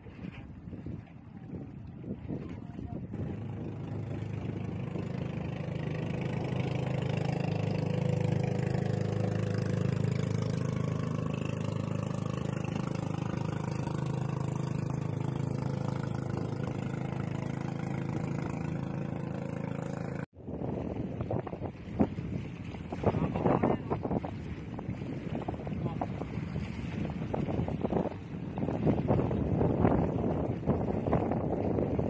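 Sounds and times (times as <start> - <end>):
boat engine running: 0.0 - 32.0.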